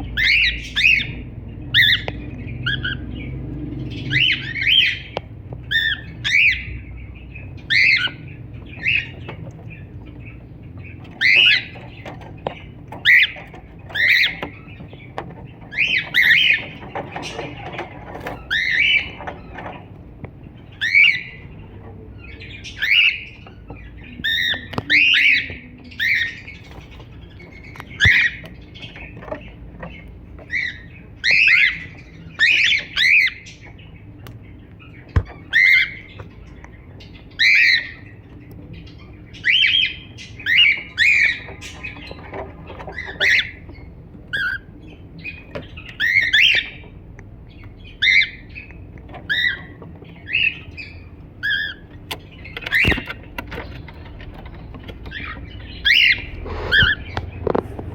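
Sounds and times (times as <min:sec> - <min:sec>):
cockatiel chirping: 0:00.2 - 0:03.1, 0:03.8 - 0:15.1, 0:15.7 - 0:19.8, 0:20.7 - 0:21.4, 0:22.2 - 0:29.4, 0:30.4 - 0:33.8, 0:35.0 - 0:36.3, 0:37.0 - 0:38.2, 0:42.9 - 0:47.0, 0:47.6 - 0:53.8, 0:55.0 - 0:57.9.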